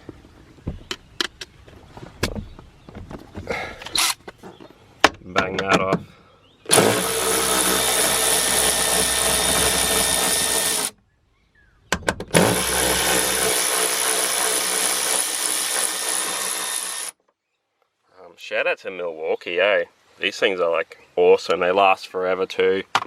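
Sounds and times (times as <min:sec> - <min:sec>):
impact wrench running: 0:06.7 - 0:10.9, 0:12.4 - 0:17.1.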